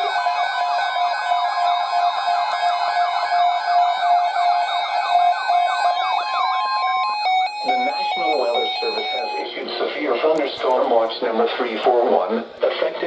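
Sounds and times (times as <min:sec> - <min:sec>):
electronic warbling alert alarms: 0:00.0 - 0:09.6.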